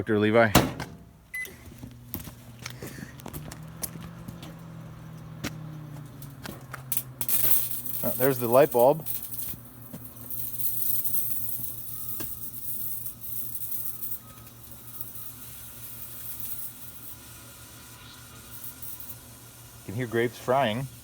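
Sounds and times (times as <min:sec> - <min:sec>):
microwave oven humming: 0:00.6 - 0:07.2, 0:08.0 - 0:21.0
grapes sizzling and sparking: 0:02.0 - 0:21.0.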